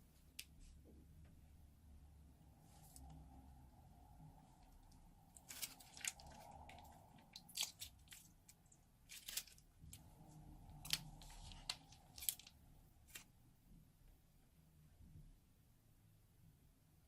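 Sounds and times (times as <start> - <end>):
slime crackling and popping: 4.8 - 9.7, 10.7 - 13.2.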